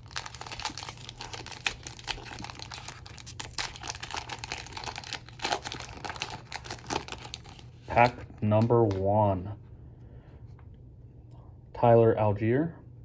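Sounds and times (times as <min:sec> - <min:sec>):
card pack wrapper crinkling and tearing: 0:00.0 - 0:08.2.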